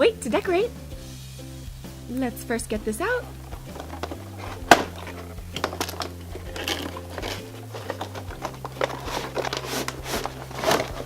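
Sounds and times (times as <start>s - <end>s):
quiet background music: 0.0s - 11.0s
packaging taps and scrapes: 2.8s - 11.0s.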